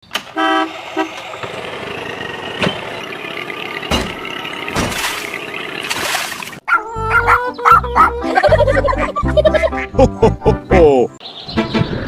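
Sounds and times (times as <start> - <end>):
engine running: 0.1 - 6.6.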